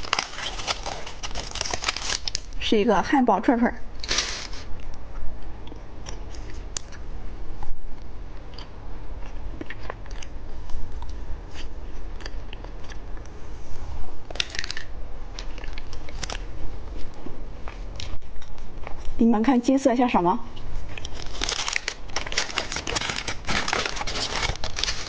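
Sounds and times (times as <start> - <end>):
plastic candy wrappers clicking: 0.0 - 2.5, 14.3 - 16.4, 21.0 - 25.0
wrapper crinkling rustles: 0.0 - 2.8, 20.9 - 25.0.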